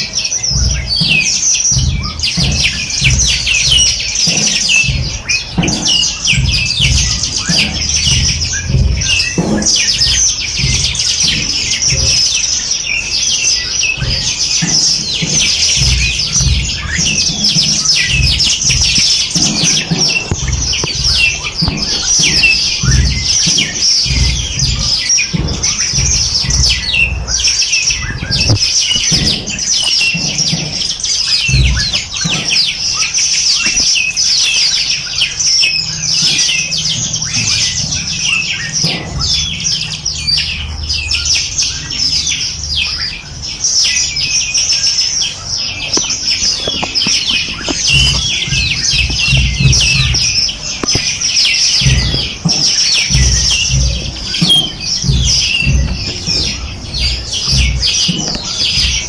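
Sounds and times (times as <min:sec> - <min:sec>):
songbirds chirping and trilling: 0:00.0 - 0:59.0
low rumbling: 0:01.7 - 0:32.8, 0:45.3 - 0:59.0.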